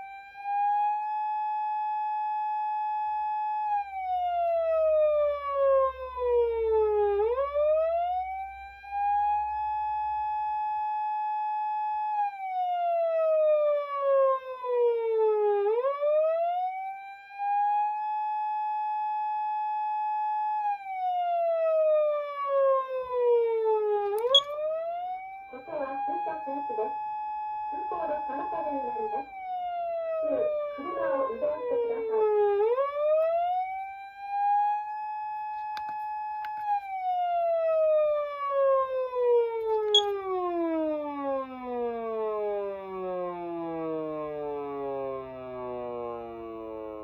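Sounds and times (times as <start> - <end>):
electronic siren: 0.0 - 47.0
siren cut-off click: 24.0 - 24.6, 33.1 - 33.4, 35.6 - 37.0, 39.6 - 40.4.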